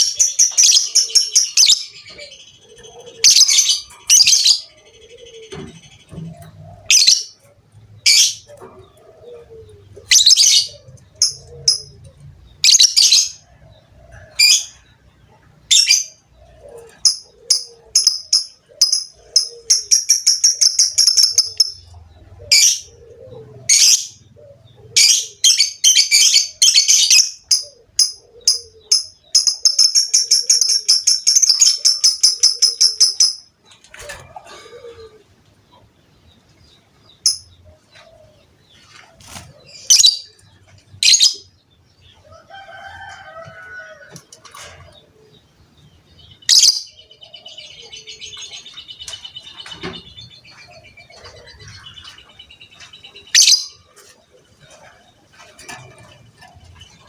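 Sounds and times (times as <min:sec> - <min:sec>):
lovebird chirping and trilling: 0:00.0 - 0:04.7, 0:25.0 - 0:33.5, 0:39.3 - 0:40.3, 0:41.0 - 0:41.5, 0:46.4 - 0:47.0, 0:53.2 - 0:53.8.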